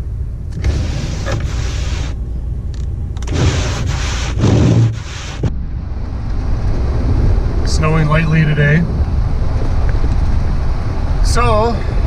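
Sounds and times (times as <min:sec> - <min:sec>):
rushing noise: 0:03.2 - 0:12.0.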